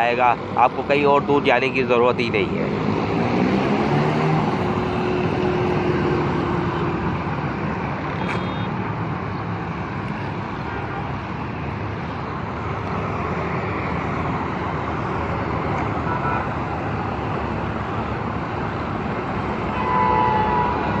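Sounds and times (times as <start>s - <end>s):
road traffic noise: 0.0s - 21.0s
vehicle horn: 8.2s - 8.8s, 16.1s - 16.5s, 19.7s - 21.0s.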